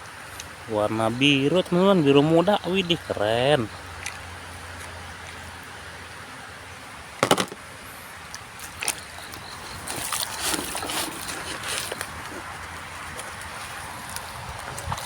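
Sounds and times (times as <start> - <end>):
plastic toys clattering: 7.2 - 7.6, 9.8 - 12.1
rustling and clicking: 8.3 - 15.0.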